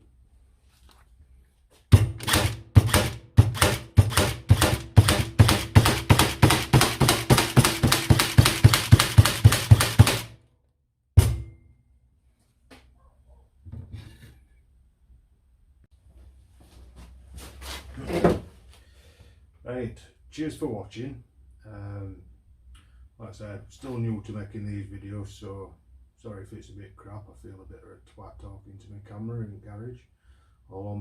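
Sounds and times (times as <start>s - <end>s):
stapler firing staples: 2.0s - 10.4s.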